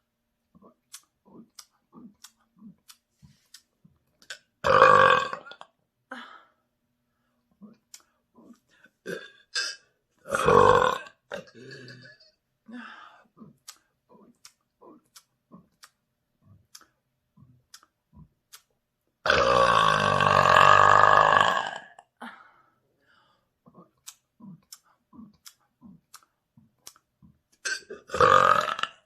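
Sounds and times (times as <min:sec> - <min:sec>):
loud deep burp: 0:04.6 - 0:05.7, 0:09.0 - 0:12.1, 0:19.2 - 0:22.1, 0:27.6 - 0:29.0.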